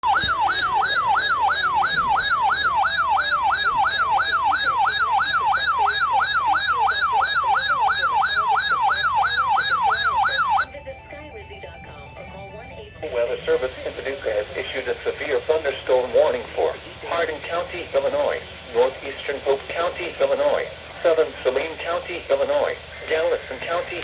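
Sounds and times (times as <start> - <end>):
electronic yelp siren: 0.0 - 16.4.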